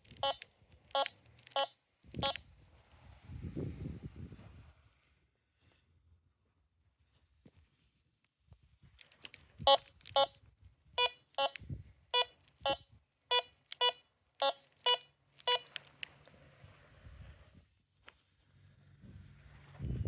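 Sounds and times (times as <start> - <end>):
metal detector beeps: 0.1 - 2.4, 12.2 - 15.8.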